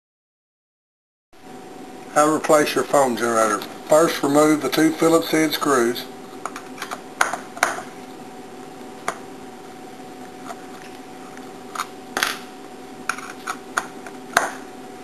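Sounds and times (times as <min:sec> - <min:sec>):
faint hum: 0:01.4 - 0:15.0.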